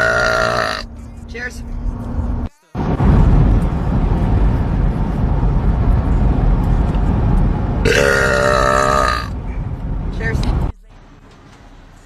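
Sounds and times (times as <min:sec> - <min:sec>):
loud burp: 0:00.0 - 0:00.8, 0:07.8 - 0:09.3
low rumbling noise: 0:00.0 - 0:12.0.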